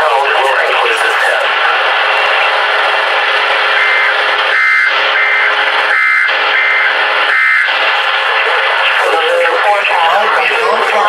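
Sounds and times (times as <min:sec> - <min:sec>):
radio hiss: 0:00.0 - 0:11.0
shrill two-tone data warbles: 0:03.7 - 0:07.7.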